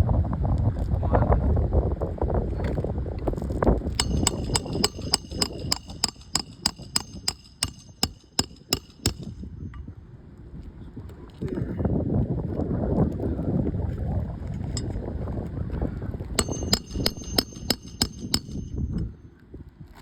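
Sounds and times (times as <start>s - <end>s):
wind buffeting microphone: 0.0s - 20.0s
sharp metallic clicks: 4.0s - 9.4s, 16.4s - 19.0s.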